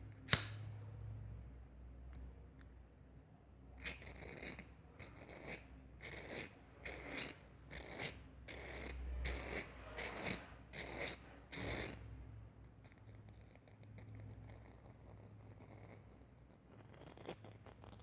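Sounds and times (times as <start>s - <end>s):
lighter flint wheel rasping: 0.3s - 0.6s.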